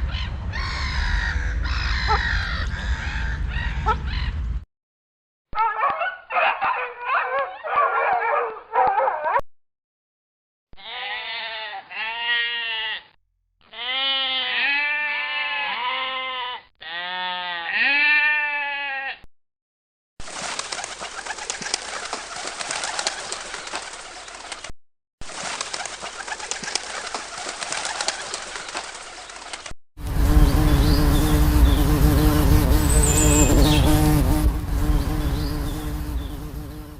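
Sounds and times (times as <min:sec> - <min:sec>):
repeated arching animal calls: 0:00.1 - 0:04.4
raspy animal call: 0:10.8 - 0:19.2.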